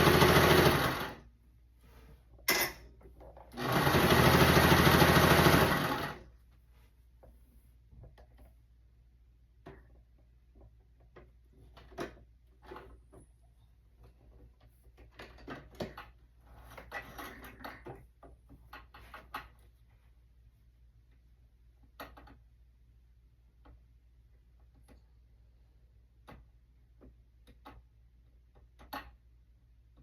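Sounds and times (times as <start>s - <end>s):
sewing machine clicks and knocks: 0.0s - 1.2s, 3.1s - 6.2s.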